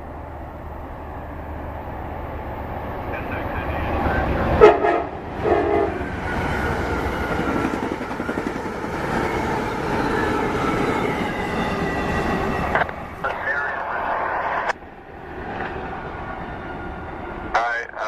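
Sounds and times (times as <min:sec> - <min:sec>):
train rumble and wheel clatter: 0:00.0 - 0:18.0
train air horn blasts: 0:04.6 - 0:06.0.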